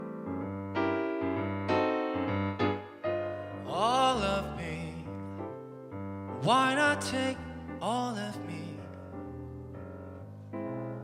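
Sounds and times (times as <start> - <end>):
slow piano chords: 0.0 - 11.0
man singing: 3.6 - 5.5, 6.3 - 9.0.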